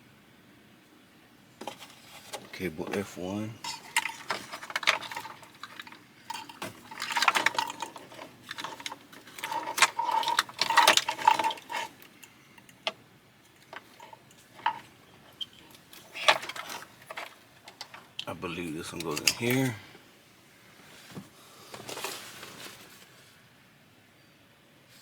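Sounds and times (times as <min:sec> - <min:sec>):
plastic connectors clattering: 0:01.6 - 0:19.8.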